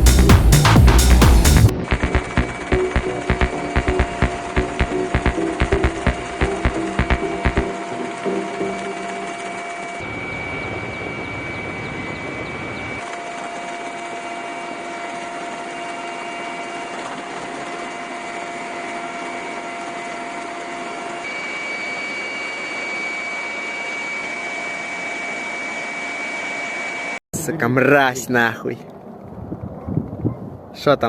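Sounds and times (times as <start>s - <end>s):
deeper rumble: 0.0s - 7.8s
helicopter turbine whine: 1.7s - 27.2s.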